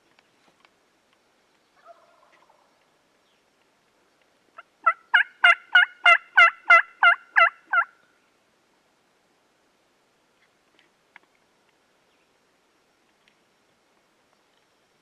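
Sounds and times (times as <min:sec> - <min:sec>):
turkey yelping: 0:01.8 - 0:02.7, 0:04.6 - 0:08.0.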